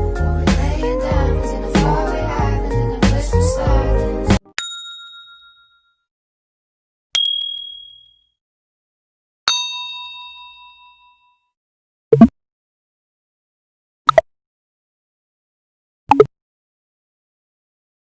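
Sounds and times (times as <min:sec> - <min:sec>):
music: 0:00.0 - 0:04.5
bell dings: 0:04.6 - 0:06.0, 0:07.2 - 0:08.3, 0:09.5 - 0:11.5.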